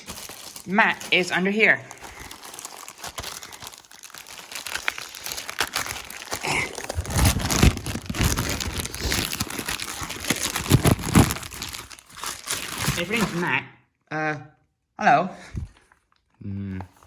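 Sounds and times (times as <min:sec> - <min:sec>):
packaging crinkling: 0:00.0 - 0:13.5.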